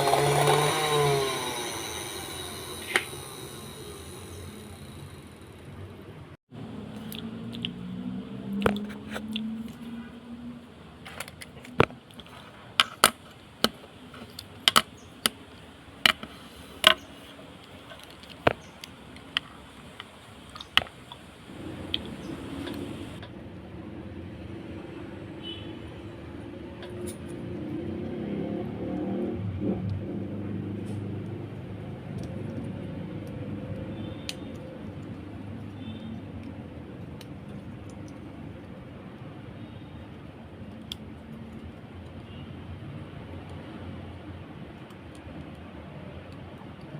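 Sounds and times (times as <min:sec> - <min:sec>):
blender parts clicking and knocking: 0:00.0 - 0:05.4, 0:11.0 - 0:15.4, 0:16.0 - 0:21.2
low hum: 0:00.0 - 0:10.8.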